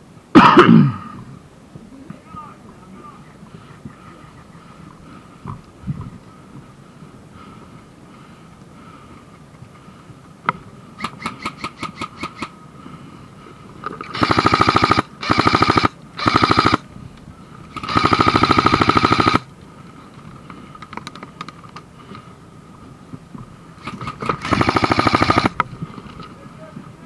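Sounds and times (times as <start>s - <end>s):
airsoft rifle firing bursts: 11.0s - 12.5s, 14.1s - 16.9s, 17.7s - 19.5s, 23.8s - 25.6s.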